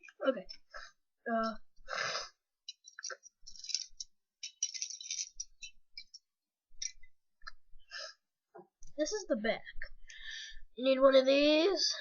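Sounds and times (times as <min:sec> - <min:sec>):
plastic bricks clicking and rattling: 0:02.7 - 0:06.2.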